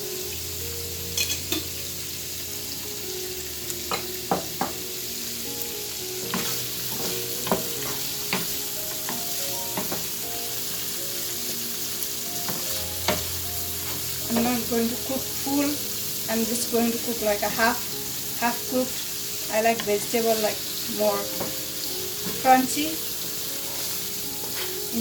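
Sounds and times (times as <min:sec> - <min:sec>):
vegetables sizzling in a pan: 0:00.0 - 0:25.0
spatula scraping a pan: 0:06.2 - 0:09.2, 0:18.8 - 0:25.0.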